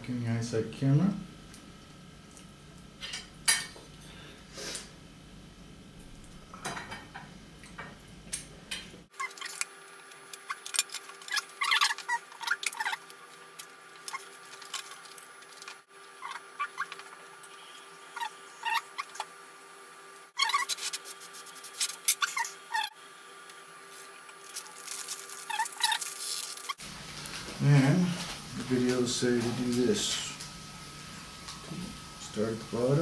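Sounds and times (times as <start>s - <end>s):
low background hum: 0.0s - 33.0s.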